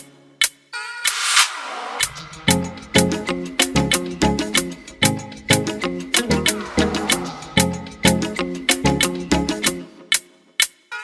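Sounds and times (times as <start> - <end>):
swept noise riser: 1.0 - 3.6
single sharp hit: 1.1 - 3.2.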